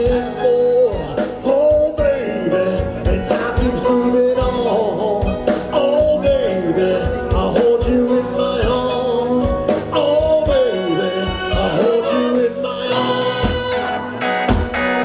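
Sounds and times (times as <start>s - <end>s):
live rock band playing: 0.0s - 15.0s.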